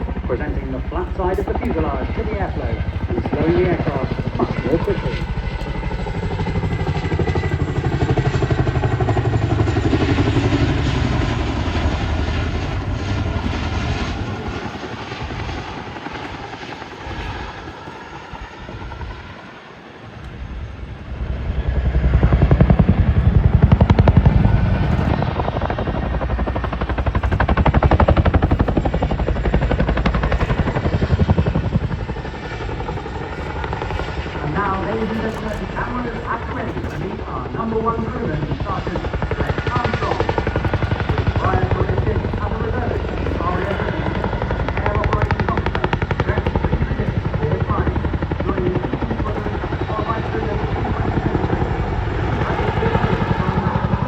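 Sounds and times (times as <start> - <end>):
helicopter rotor chop: 0.0 - 54.0.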